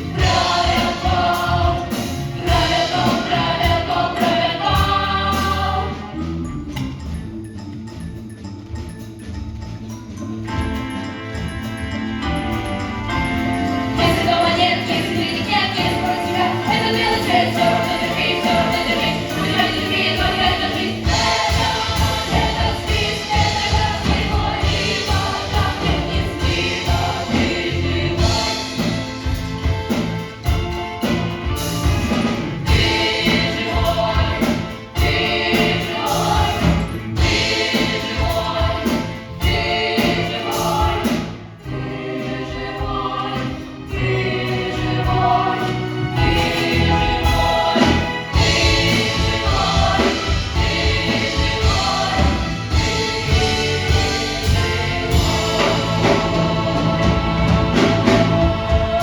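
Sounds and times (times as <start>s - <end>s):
band accompaniment with steady beat: 0.0s - 59.0s
cast singing in chorus: 41.7s - 59.0s.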